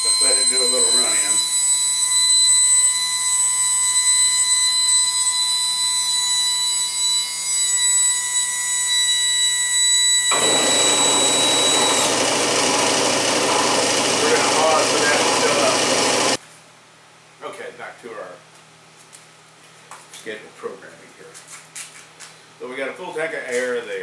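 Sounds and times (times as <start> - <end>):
air die grinder whining: 10.2 - 16.4
air compressor running: 10.3 - 16.4.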